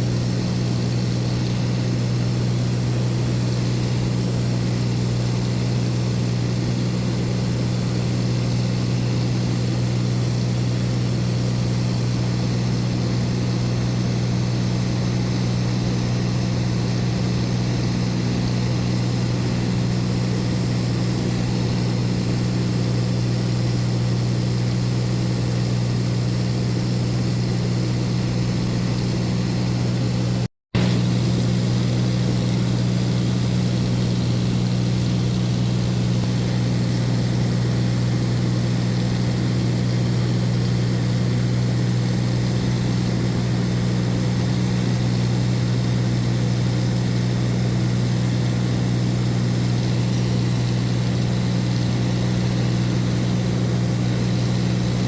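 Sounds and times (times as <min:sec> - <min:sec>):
propeller aircraft engine drone: 0:00.0 - 0:55.0.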